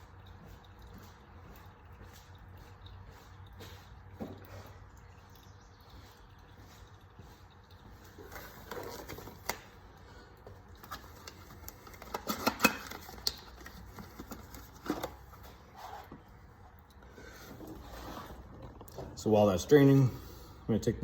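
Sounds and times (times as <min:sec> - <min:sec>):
clicks and knocks of tools: 0:10.8 - 0:15.2.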